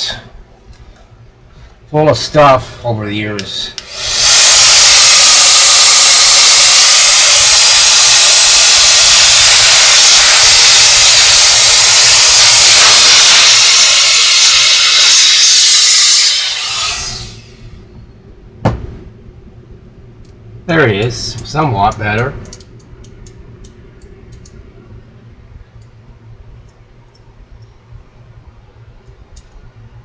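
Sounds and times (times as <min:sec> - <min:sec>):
hissing rush of blown air: 0:01.5 - 0:19.2.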